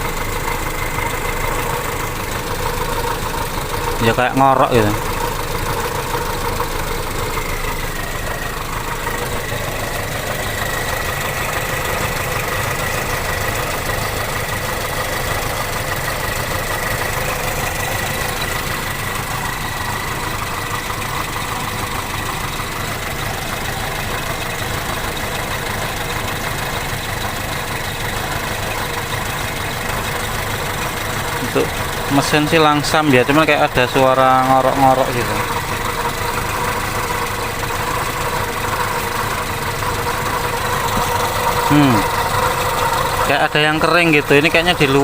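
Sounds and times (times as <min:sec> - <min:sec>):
engine idling: 0:00.0 - 0:45.0
snoring croaking engine bay noise: 0:30.9 - 0:45.0.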